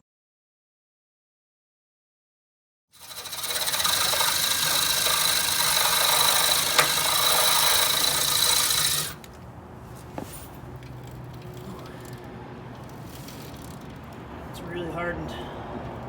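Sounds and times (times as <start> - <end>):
power drill grinding on steel: 3.0 - 9.4.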